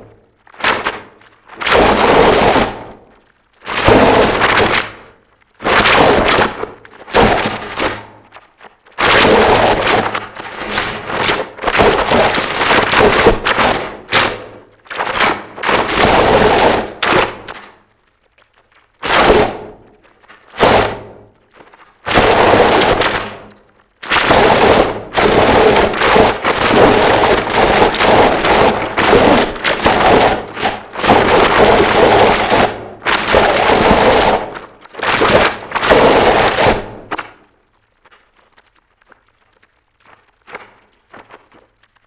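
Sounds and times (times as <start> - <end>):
faint crackle: 0.0 - 42.0.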